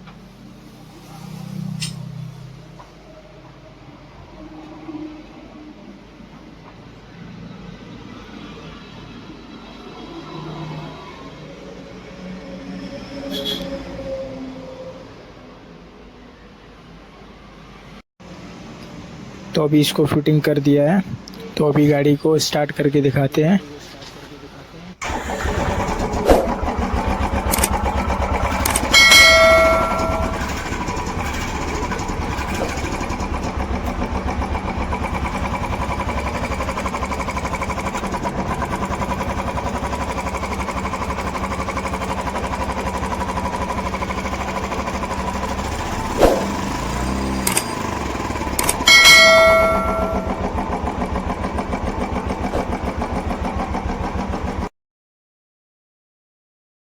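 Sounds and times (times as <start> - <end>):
motorcycle engine starting and idling: 25.0 - 54.7
high ringing tones: 28.5 - 32.6, 48.7 - 50.9.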